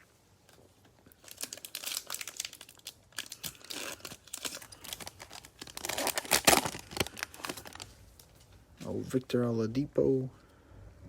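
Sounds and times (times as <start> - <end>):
card pack wrapper crinkling: 1.1 - 8.4.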